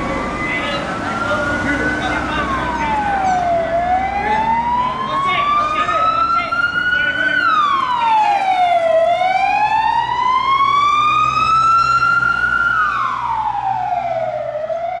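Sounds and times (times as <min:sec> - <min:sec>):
emergency vehicle siren wailing: 0:00.0 - 0:15.0.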